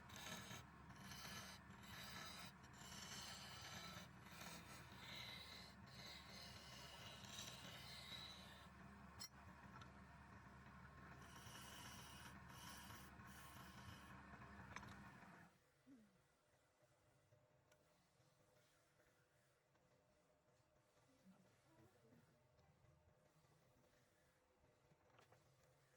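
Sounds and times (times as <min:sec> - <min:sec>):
wood lathe humming: 0:00.0 - 0:09.2
tool scraping spinning wood: 0:00.0 - 0:09.3, 0:11.0 - 0:15.3.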